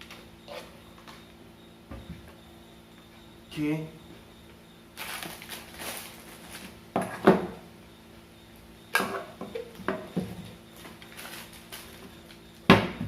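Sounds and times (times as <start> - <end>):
packaging rustling: 5.0 - 6.8, 11.0 - 12.0
small hard items clattering: 5.0 - 6.8.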